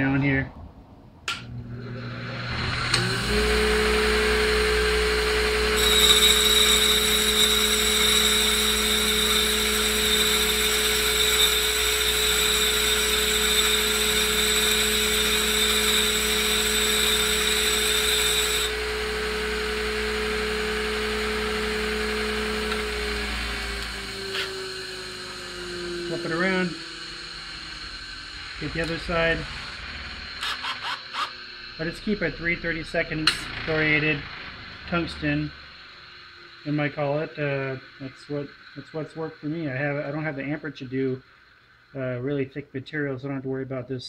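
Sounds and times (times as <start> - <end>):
grinder motor running: 1.5 - 40.6
cordless drill whining: 2.0 - 31.5.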